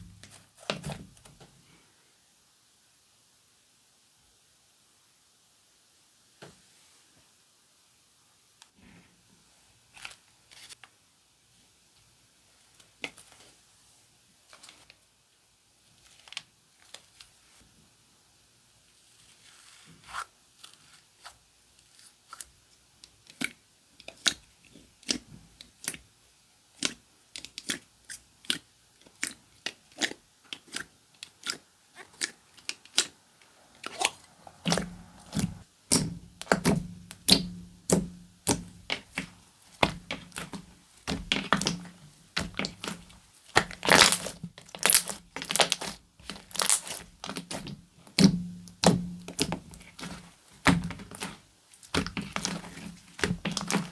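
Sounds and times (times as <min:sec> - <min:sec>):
slime squished by hand popping: 0:33.8 - 0:53.9.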